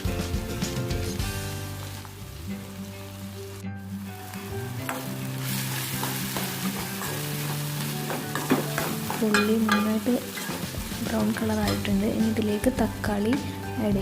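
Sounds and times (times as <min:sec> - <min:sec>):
background music held notes: 0:00.0 - 0:14.0
onions sizzling in a pan: 0:00.0 - 0:14.0
spoon clicking against pan: 0:09.3 - 0:09.9.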